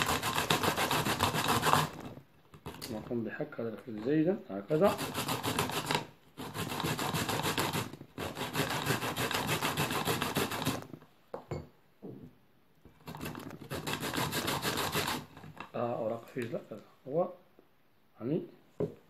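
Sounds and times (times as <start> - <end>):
radish grated on a grater: 0.0 - 3.0, 4.7 - 10.9, 13.0 - 15.7.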